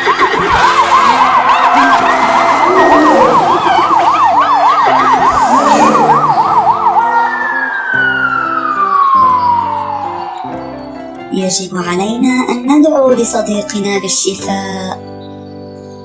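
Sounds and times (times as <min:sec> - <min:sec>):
emergency siren wailing: 0:00.0 - 0:12.5.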